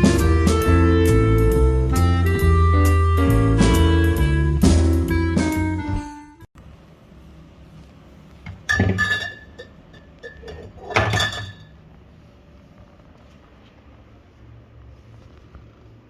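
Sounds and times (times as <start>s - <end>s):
hard objects clinking: 8.5s - 11.7s.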